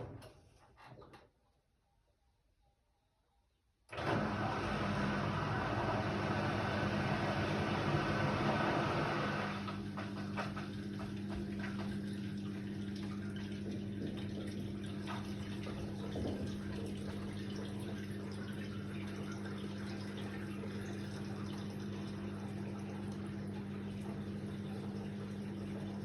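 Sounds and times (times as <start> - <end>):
washing machine hum: 0.0 - 1.4, 3.9 - 26.0
water trickling and splashing: 10.0 - 26.0.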